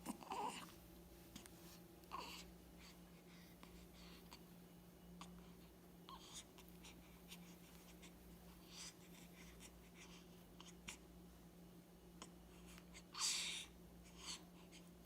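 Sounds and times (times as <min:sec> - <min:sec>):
faint rustles and clicks: 0:00.0 - 0:04.6
steady low hum: 0:00.0 - 0:15.0.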